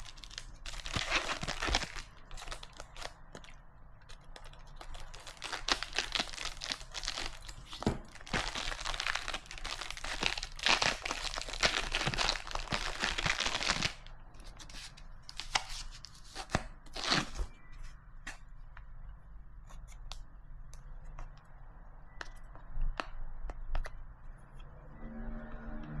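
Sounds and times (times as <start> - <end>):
plastic packaging crinkling and tearing: 0.0 - 17.5.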